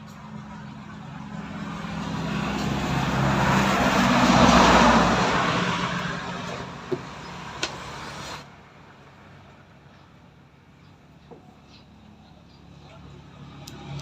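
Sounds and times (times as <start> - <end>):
vehicle passing by: 0.3 - 8.5, 12.7 - 14.0.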